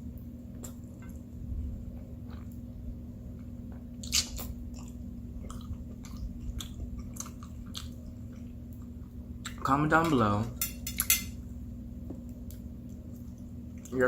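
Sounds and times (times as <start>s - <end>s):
faint steady hum: 0.0s - 14.0s
chewing food: 0.5s - 9.7s, 12.4s - 14.0s.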